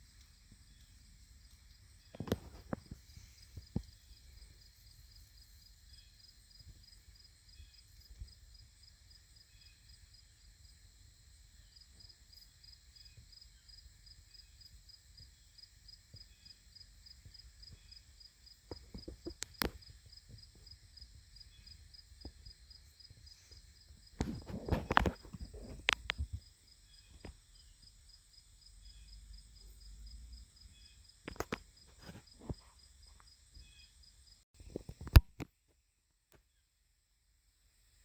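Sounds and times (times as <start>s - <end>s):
crickets chirping: 0.0s - 35.1s
sharp click: 35.0s - 35.5s.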